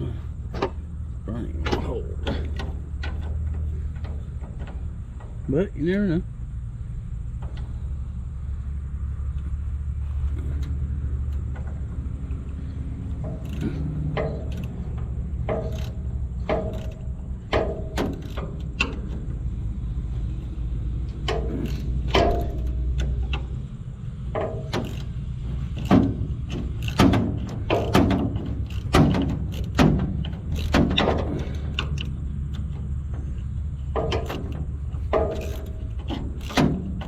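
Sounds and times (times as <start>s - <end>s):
steady low rumble: 0.0s - 37.0s
hand tools knocking on metal: 13.2s - 19.3s, 32.6s - 37.0s.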